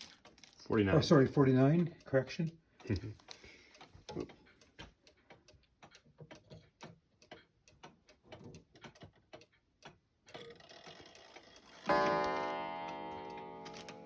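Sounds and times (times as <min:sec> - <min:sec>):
wall clock ticking: 0:00.0 - 0:14.0.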